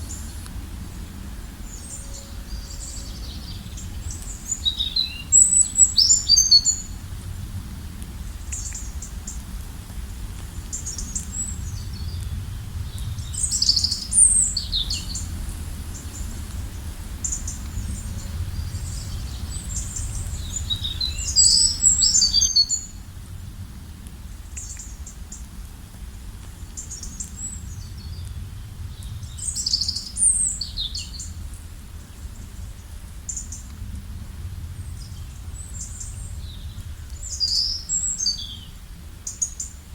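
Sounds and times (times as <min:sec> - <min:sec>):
songbird chirping: 0:00.0 - 0:07.1, 0:10.6 - 0:23.0, 0:26.7 - 0:33.8, 0:34.7 - 0:39.9.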